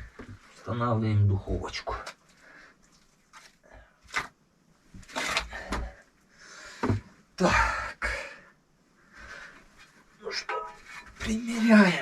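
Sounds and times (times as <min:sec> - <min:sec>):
metal clunking and scraping on brick: 0:10.5 - 0:11.4.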